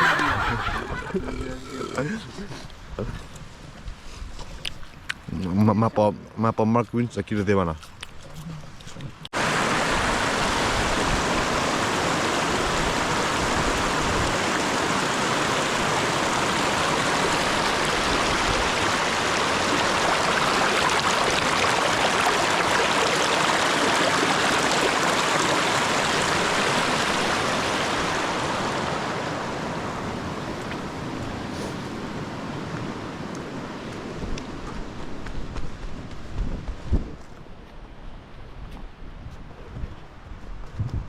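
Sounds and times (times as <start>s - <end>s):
rushing water: 9.2s - 36.1s.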